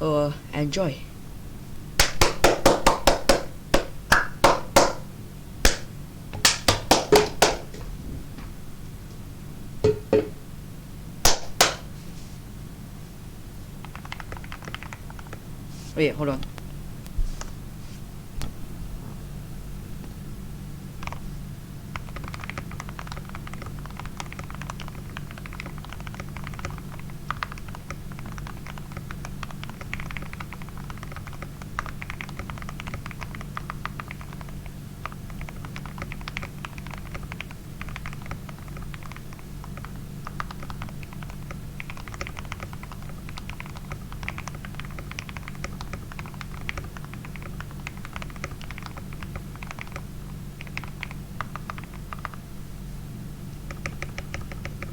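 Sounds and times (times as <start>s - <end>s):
typing on mechanical keyboard: 13.8s - 15.4s, 21.0s - 21.2s, 21.9s - 52.4s, 53.7s - 54.9s.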